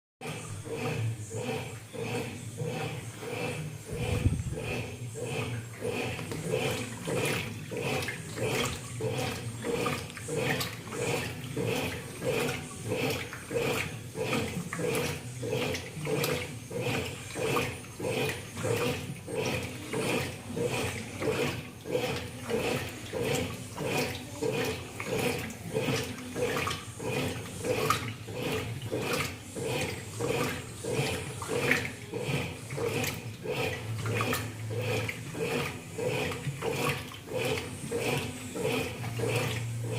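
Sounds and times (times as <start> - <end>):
washing machine churning water: 0.2 - 39.9.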